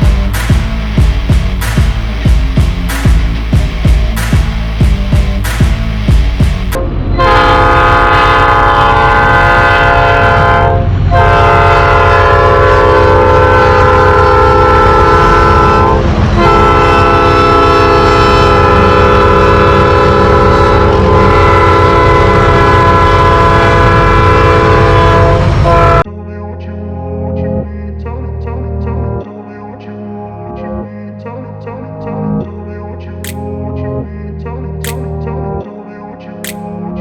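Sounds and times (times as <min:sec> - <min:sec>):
train rumbling: 0:00.0 - 0:26.0
train horn blasts: 0:07.1 - 0:26.0.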